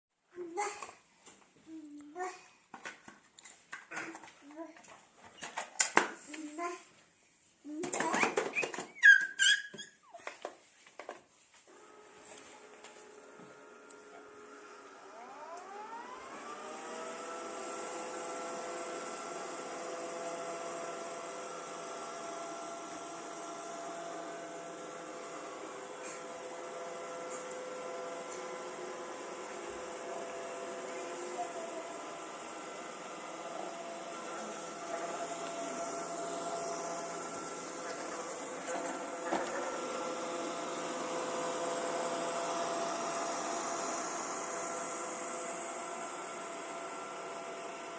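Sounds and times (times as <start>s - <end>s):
vacuum cleaner hiss: 11.7s - 47.9s
vacuum cleaner motor whine: 11.7s - 47.9s.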